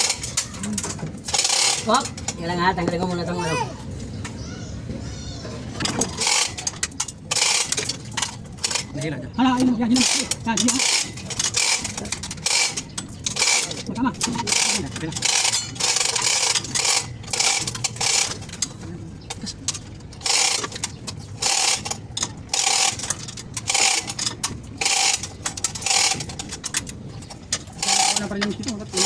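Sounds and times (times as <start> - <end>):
chain rattling: 0.0 - 3.4, 5.8 - 29.0
ratcheting clicks: 5.8 - 9.0, 9.6 - 18.7, 19.3 - 29.0.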